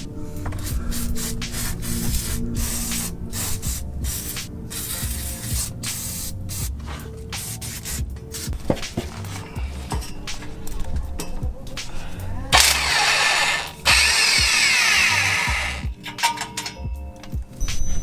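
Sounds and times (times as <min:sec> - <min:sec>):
background music: 0:00.0 - 0:18.0
aerosol spray can hissing: 0:00.6 - 0:06.7, 0:07.4 - 0:08.5.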